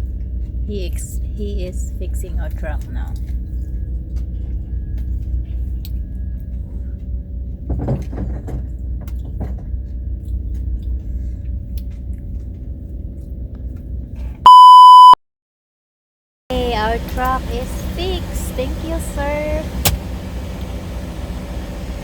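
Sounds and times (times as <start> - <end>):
loud electronic beep: 14.5 - 15.2
diesel truck engine idling: 16.5 - 22.0.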